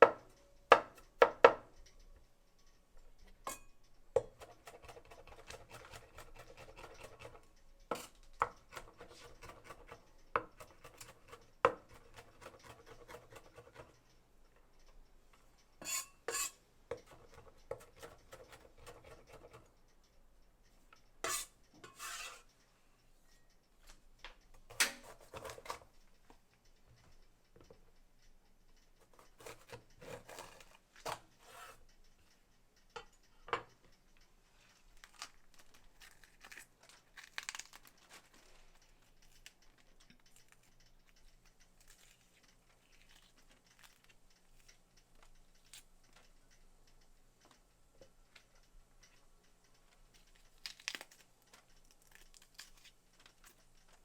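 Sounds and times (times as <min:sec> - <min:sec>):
kitchen clatter: 0:15.8 - 0:19.6.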